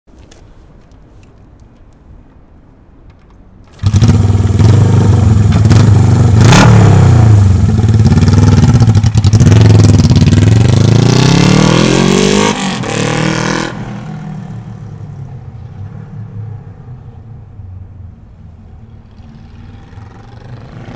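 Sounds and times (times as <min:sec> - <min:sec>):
motorcycle engine revving: 0:03.7 - 0:14.6, 0:19.1 - 0:20.9.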